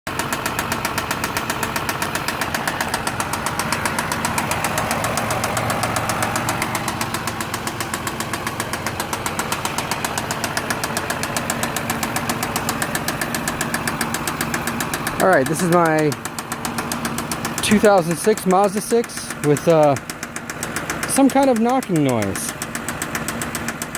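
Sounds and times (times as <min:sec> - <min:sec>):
car engine running: 0:00.1 - 0:23.9
engine ticking knock: 0:00.1 - 0:23.9.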